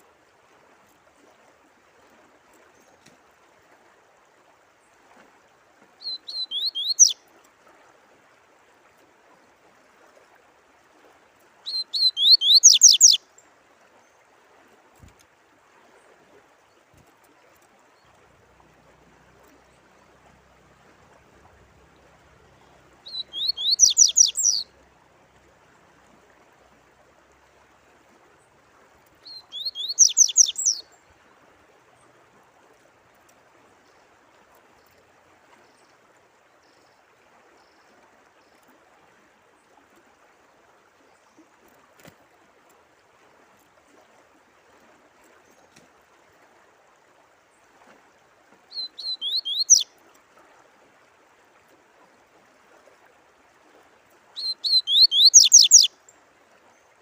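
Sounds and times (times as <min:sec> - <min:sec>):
running water: 0:00.0 - 0:57.0
songbird singing: 0:06.0 - 0:07.2, 0:11.6 - 0:13.5, 0:21.5 - 0:25.0, 0:29.2 - 0:31.2, 0:48.7 - 0:49.9, 0:54.4 - 0:56.1.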